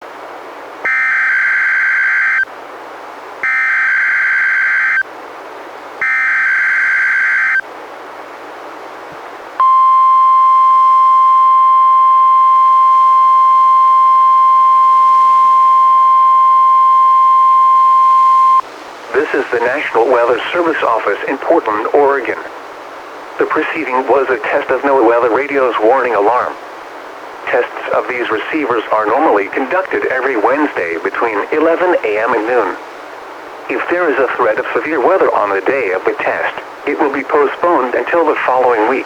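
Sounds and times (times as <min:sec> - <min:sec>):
receiver hiss: 0:00.0 - 0:39.0
digital data tone bursts: 0:00.9 - 0:02.5, 0:03.4 - 0:05.0, 0:06.0 - 0:07.6
steady alarm tone: 0:00.9 - 0:02.5, 0:03.4 - 0:05.0, 0:06.0 - 0:07.6.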